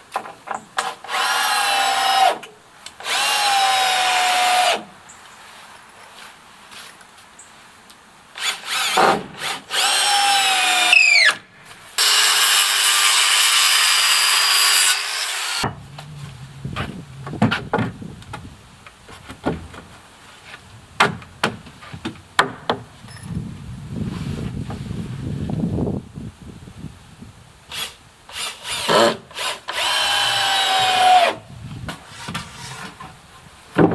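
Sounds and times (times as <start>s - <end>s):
power tool cutting wood: 3.0s - 4.9s, 8.4s - 11.4s, 12.0s - 16.1s, 27.8s - 31.4s
knocks: 16.8s - 18.5s, 21.0s - 22.9s.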